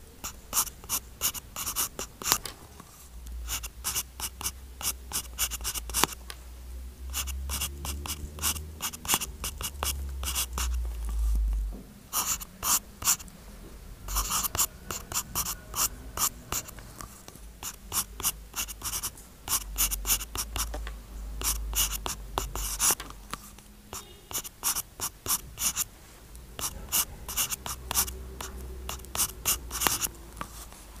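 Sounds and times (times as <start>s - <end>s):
stylus scratching on screen: 3.5s - 6.2s, 7.2s - 11.5s, 14.1s - 20.8s, 21.4s - 25.9s, 26.6s - 30.8s.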